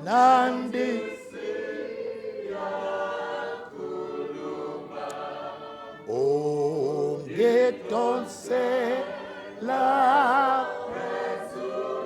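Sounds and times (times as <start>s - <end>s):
lead voice singing: 0.0s - 1.4s, 6.0s - 11.8s
group singing a hymn: 0.0s - 12.0s.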